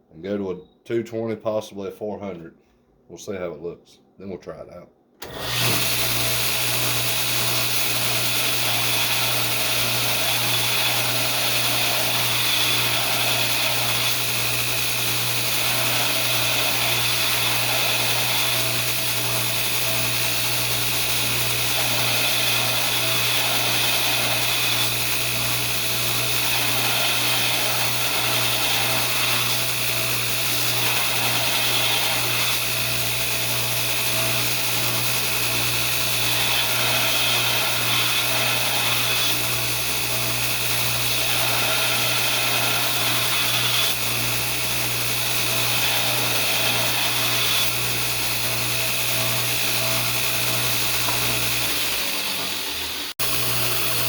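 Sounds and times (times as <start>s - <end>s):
belt grinder motor hum: 5.2s - 54.0s
abrasive belt hissing against steel: 21.2s - 29.8s.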